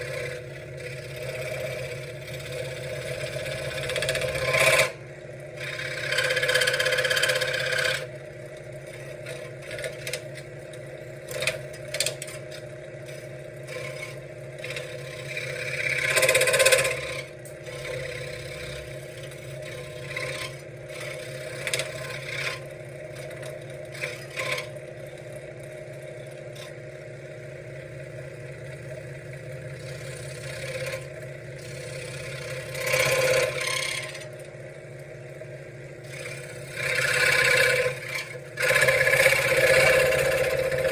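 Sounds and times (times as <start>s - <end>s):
scroll saw cutting wood: 0.0s - 5.0s, 5.6s - 8.1s, 8.8s - 10.5s, 11.2s - 24.8s, 29.6s - 34.5s, 36.0s - 40.9s.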